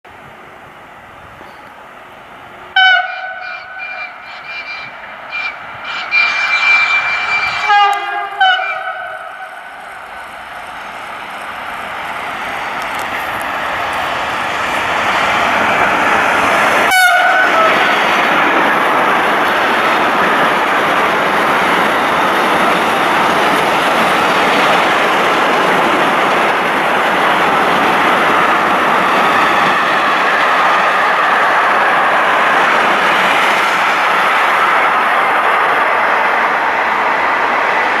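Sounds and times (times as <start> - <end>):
freight train rumbling past: 0.1 - 38.0
train horn blast: 2.8 - 9.7, 16.9 - 18.0.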